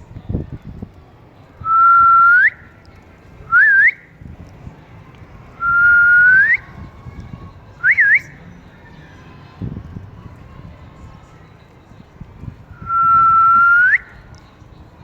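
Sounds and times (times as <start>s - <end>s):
person whistling: 12.8s - 14.1s.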